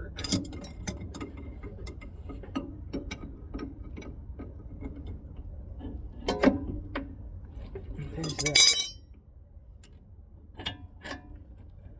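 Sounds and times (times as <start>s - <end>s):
metallic clank: 8.2s - 9.0s.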